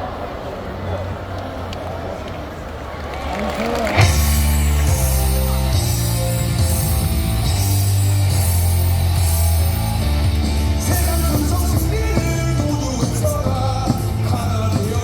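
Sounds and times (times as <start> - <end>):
rock music over loudspeakers: 3.9 - 15.0
voices singing: 10.6 - 15.0.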